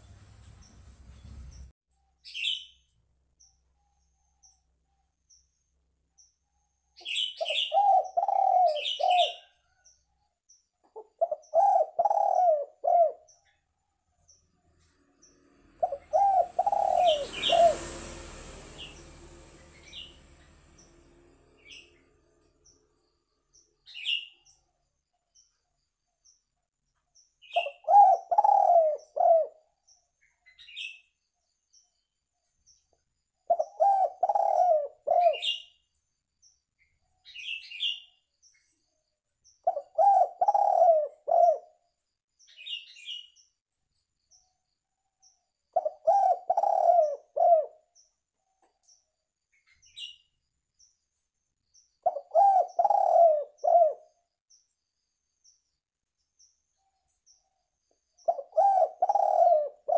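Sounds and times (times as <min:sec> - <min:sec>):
small birds chirping: 0:00.0 - 0:17.9, 0:18.8 - 0:59.9
dove cooing: 0:07.1 - 0:09.5, 0:10.9 - 0:13.3, 0:15.8 - 0:17.9, 0:27.6 - 0:29.6, 0:33.5 - 0:35.6, 0:39.7 - 0:41.8, 0:45.8 - 0:47.9, 0:52.0 - 0:54.1, 0:58.3 - 0:59.9
rushing noise: 0:16.0 - 0:22.2.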